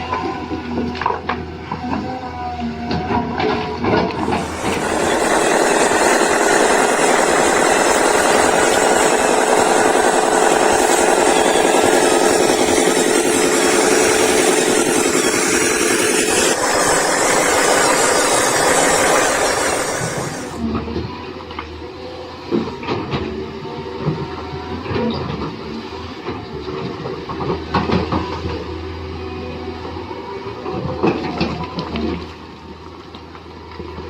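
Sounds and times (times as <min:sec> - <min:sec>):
model vehicle motor whirring: 0:04.2 - 0:20.6.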